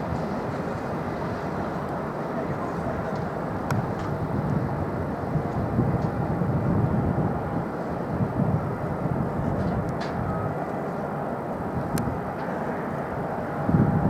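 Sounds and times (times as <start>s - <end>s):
jet engines rumbling: 0.0s - 14.0s.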